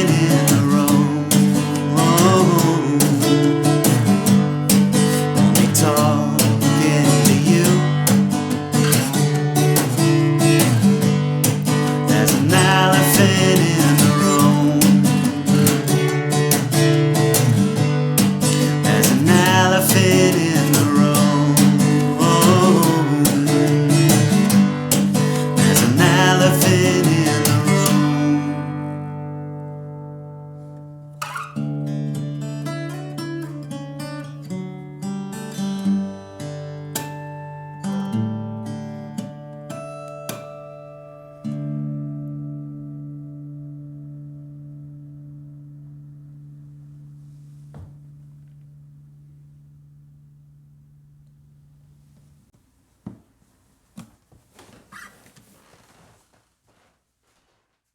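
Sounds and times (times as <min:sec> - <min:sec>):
picked guitar notes: 0:00.0 - 0:52.4
acoustic guitar strumming: 0:00.0 - 0:52.5.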